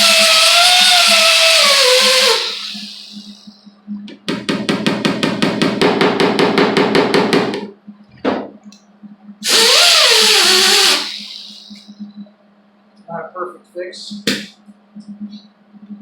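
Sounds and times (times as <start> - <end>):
power tool whining: 0.0 - 3.2, 9.4 - 11.7.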